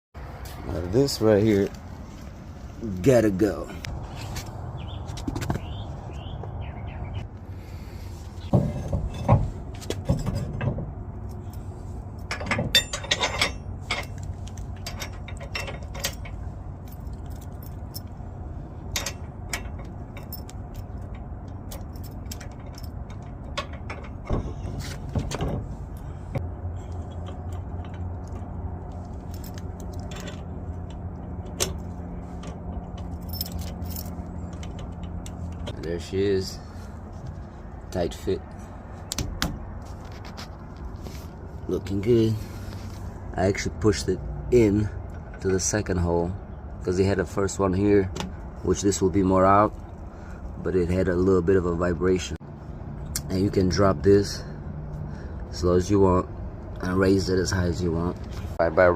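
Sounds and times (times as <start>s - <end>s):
steady low rumble: 0.2s - 58.9s
metal hitch clinking and knocking: 8.5s - 51.3s.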